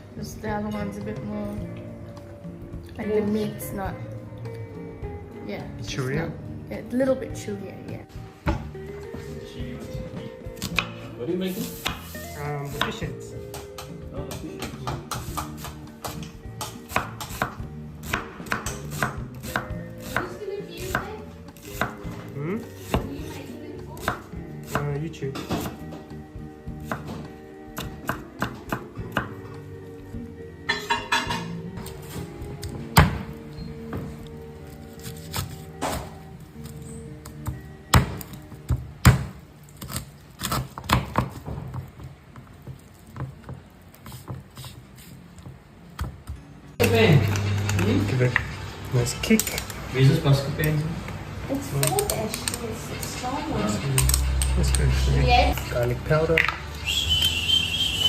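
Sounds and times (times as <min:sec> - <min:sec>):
knife chopping on cutting board: 0:10.6 - 0:11.0, 0:11.6 - 0:23.4, 0:24.0 - 0:26.1, 0:26.8 - 0:29.6, 0:31.8 - 0:33.3, 0:35.0 - 0:41.9
kitchen utensils tapping and clicking: 0:13.5 - 0:17.4, 0:30.7 - 0:31.6, 0:51.8 - 0:53.2.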